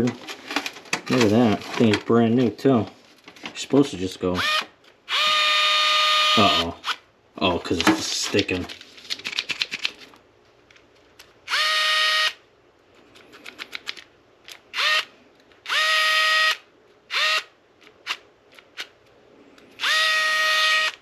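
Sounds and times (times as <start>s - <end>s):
cordless drill whine: 4.4s - 7.0s, 11.5s - 12.4s, 14.8s - 15.1s, 15.7s - 17.5s, 19.8s - 21.0s.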